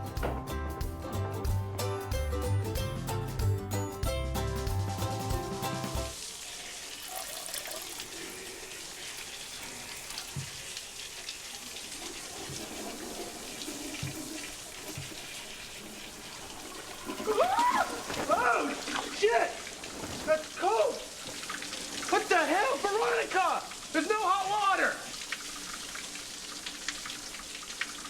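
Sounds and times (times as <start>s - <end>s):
background music: 0.0s - 6.2s
shower water spraying: 4.5s - 28.0s.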